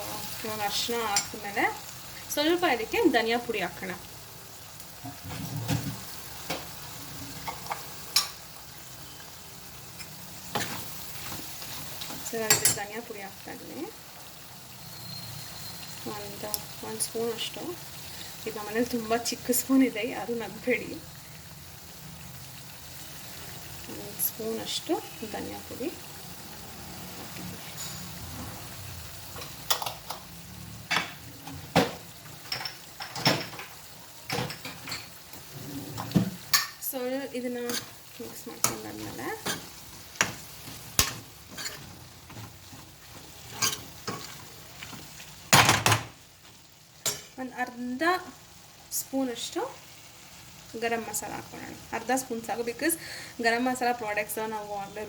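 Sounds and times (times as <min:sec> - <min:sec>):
sauce sizzling in a pan: 0:00.0 - 0:55.0
spoon clinking against a pan: 0:12.5 - 0:12.9
utensil scraping a pan: 0:37.5 - 0:45.3.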